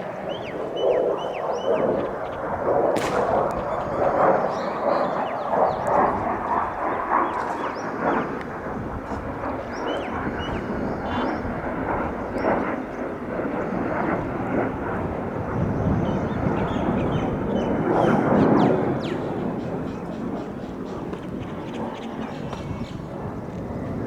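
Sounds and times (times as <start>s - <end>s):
fighter jet engine rumble: 0.0s - 24.0s.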